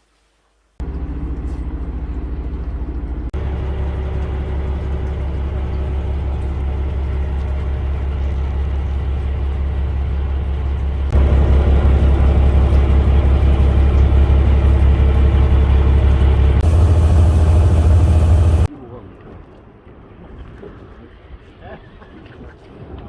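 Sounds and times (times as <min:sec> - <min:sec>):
boat engine humming: 0:00.8 - 0:18.7.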